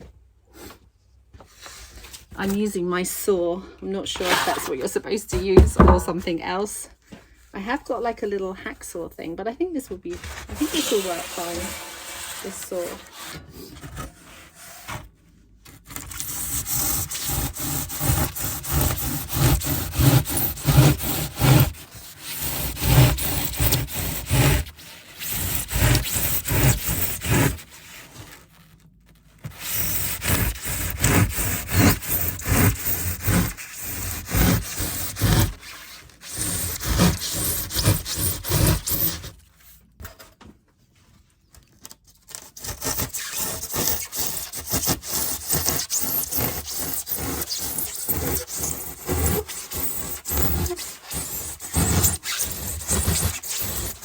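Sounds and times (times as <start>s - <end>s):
hand saw cutting insulation: 4.1s - 6.1s, 10.4s - 15.1s, 15.7s - 28.6s, 29.4s - 39.4s, 42.3s - 54.0s.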